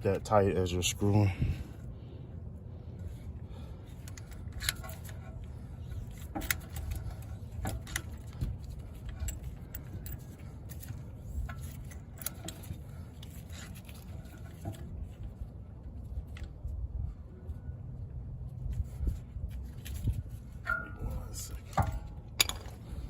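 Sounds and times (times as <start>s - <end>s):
steady low rumble: 0.0s - 23.0s
light metal scraping: 2.9s - 16.6s, 18.5s - 23.0s.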